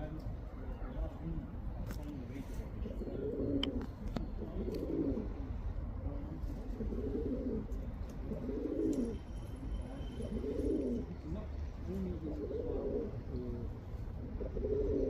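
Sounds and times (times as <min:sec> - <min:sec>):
pigeon cooing: 0:02.8 - 0:09.3, 0:09.9 - 0:15.0.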